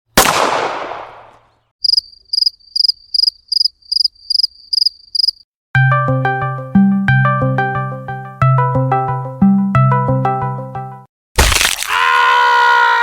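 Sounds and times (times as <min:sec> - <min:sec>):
cricket chirping: 0:01.8 - 0:05.4.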